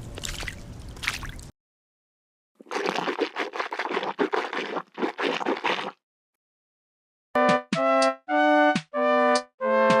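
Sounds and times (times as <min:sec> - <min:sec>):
synthesizer melody: 0:07.4 - 0:10.0.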